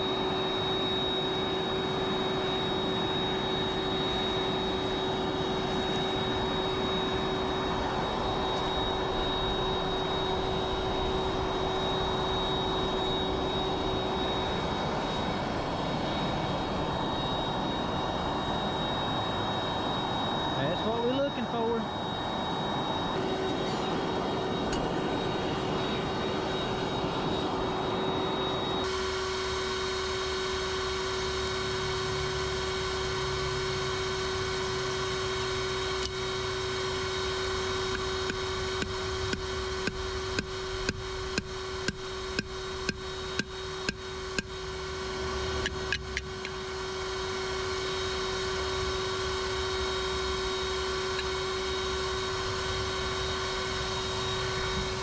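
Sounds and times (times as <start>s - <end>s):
forge blower humming: 0.0s - 55.0s.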